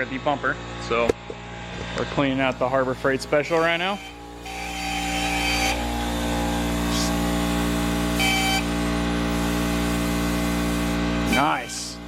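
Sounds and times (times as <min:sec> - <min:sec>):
air compressor running: 0:00.0 - 0:12.0
compressed air hissing: 0:09.3 - 0:11.9.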